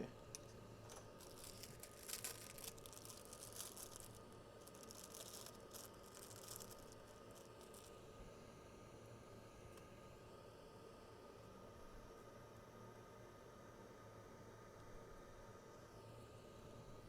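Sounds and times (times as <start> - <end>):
low steady hum: 0.0 - 17.0
faint crinkling and rustling: 0.3 - 8.0.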